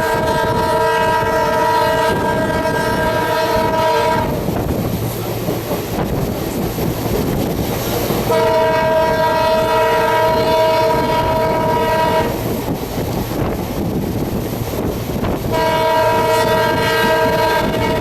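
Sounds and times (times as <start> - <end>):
locomotive horn blast: 0.0 - 4.5, 8.3 - 12.4, 15.5 - 18.0
train rumble and clatter: 0.0 - 18.0.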